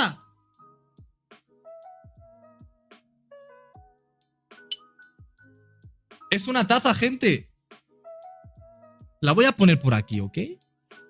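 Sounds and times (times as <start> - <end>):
electronic music: 9.2 - 10.2.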